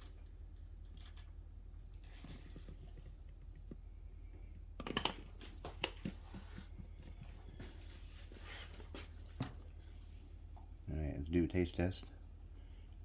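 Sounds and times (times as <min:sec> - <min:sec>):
small clicks and rustles: 0:00.0 - 0:03.8
steady low hum: 0:00.0 - 0:13.0.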